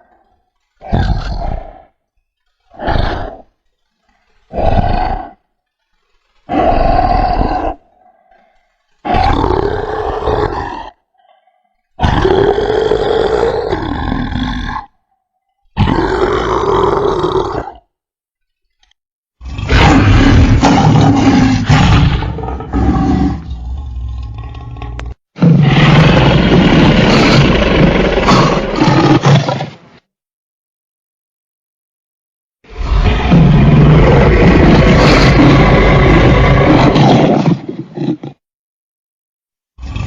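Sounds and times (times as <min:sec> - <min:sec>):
deep dinosaur roars: 0:00.0 - 0:02.0, 0:02.7 - 0:03.6, 0:04.4 - 0:05.5, 0:06.4 - 0:15.0, 0:15.8 - 0:17.9, 0:19.4 - 0:29.9, 0:32.7 - 0:38.4, 0:39.8 - 0:40.0
roaring and grunting: 0:00.8 - 0:02.0, 0:02.7 - 0:03.6, 0:04.4 - 0:05.4, 0:06.5 - 0:15.0, 0:15.8 - 0:17.9, 0:19.4 - 0:29.8, 0:32.7 - 0:38.4, 0:39.8 - 0:40.0.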